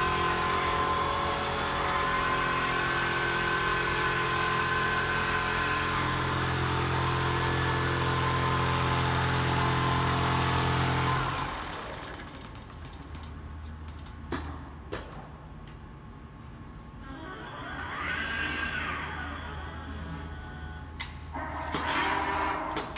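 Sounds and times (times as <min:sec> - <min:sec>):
quilting machine running: 0:00.0 - 0:12.8.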